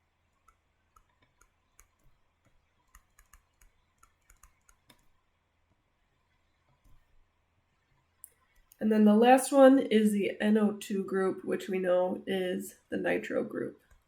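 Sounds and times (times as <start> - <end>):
stylus tapping tablet screen: 0.3 - 5.8.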